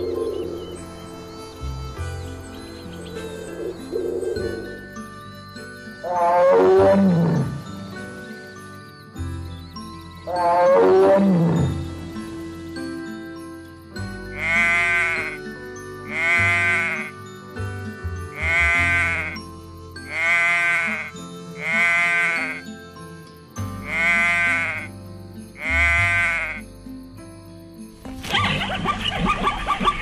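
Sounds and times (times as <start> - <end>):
background music: 0.0 - 30.0
sheep bleating: 14.4 - 15.4, 16.1 - 17.1, 18.3 - 19.4, 20.1 - 22.6, 23.8 - 24.9, 25.6 - 26.6.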